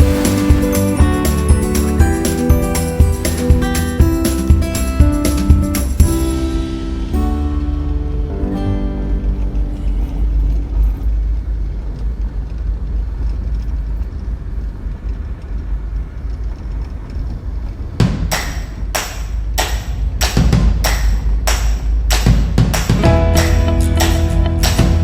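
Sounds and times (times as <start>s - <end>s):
wind buffeting microphone: 0.0s - 7.0s
percussive music beat: 0.0s - 8.4s, 18.1s - 25.0s.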